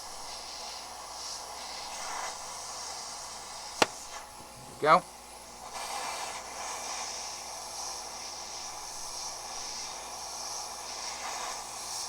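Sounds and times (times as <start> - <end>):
small air pump buzzing: 5.6 - 12.0
air hissing from nozzle: 5.8 - 12.0.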